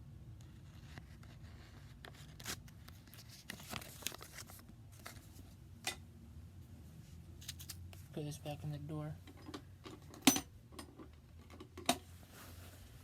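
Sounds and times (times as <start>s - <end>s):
rustling: 12.1s - 13.0s.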